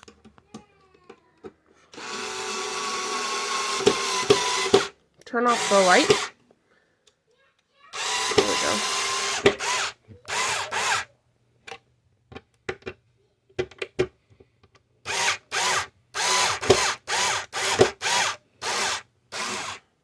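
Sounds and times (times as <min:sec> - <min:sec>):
small clicks and knocks: 0:00.0 - 0:01.8, 0:11.6 - 0:14.9
power drill motor: 0:01.9 - 0:06.4, 0:08.0 - 0:11.1, 0:15.0 - 0:19.9.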